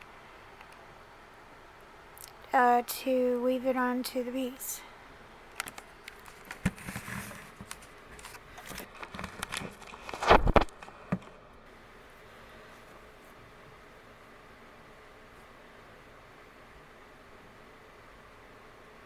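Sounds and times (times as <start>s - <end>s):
wire clicking and rustling: 5.5s - 11.4s.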